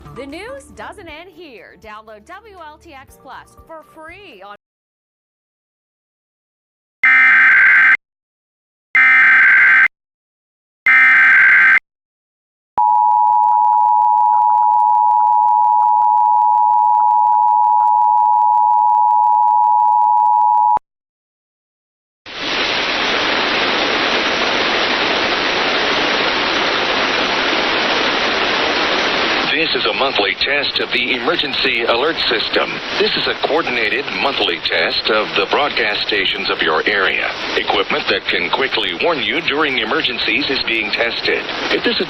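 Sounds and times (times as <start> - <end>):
steady hiss: 22.3 - 42.0.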